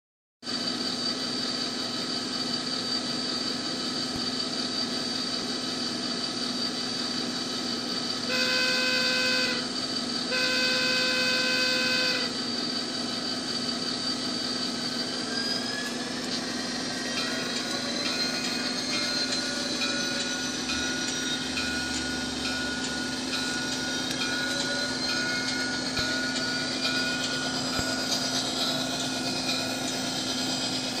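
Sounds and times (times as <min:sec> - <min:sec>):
rising whine: 0:00.6 - 0:31.0
diesel locomotive idling: 0:05.2 - 0:31.0
air whistle blasts: 0:08.2 - 0:09.7, 0:10.3 - 0:12.4, 0:14.8 - 0:31.0.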